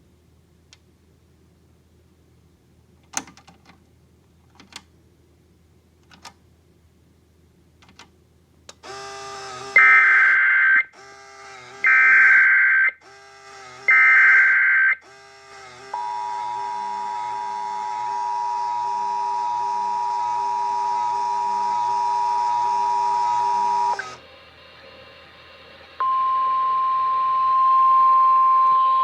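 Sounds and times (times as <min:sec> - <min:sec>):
steady alarm tone: 0:09.7 - 0:11.0, 0:11.8 - 0:13.0, 0:13.9 - 0:15.2, 0:15.9 - 0:24.0, 0:26.0 - 0:29.0.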